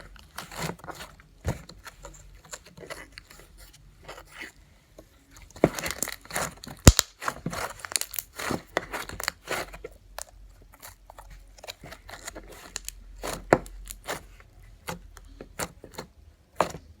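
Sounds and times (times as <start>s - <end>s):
slime squished by hand: 5.8s - 9.0s.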